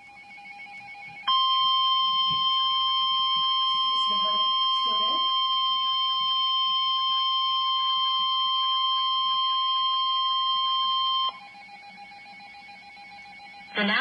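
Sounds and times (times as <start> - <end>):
loud steady warning alarm tone: 0.0 - 14.0.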